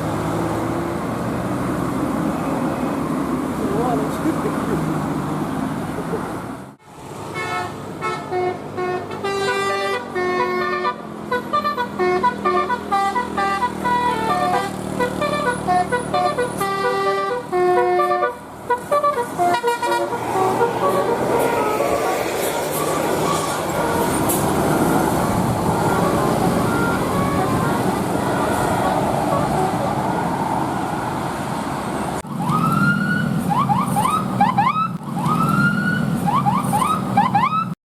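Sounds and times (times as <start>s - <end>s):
road noise: 0.0s - 37.8s
bus multi-tone horn melody: 7.2s - 30.5s.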